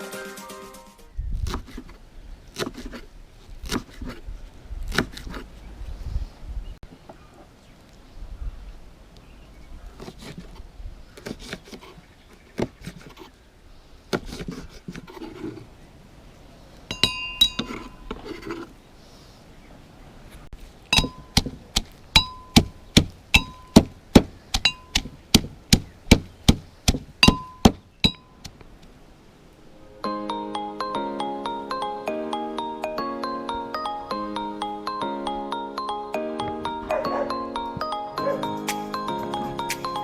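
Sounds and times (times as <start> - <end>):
ringing metallic strikes: 16.9 - 17.8, 23.4 - 23.9.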